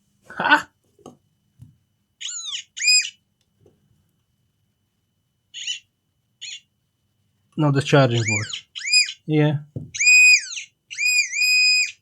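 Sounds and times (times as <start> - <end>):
metal detector chirps: 8.1 - 9.2, 9.9 - 12.0.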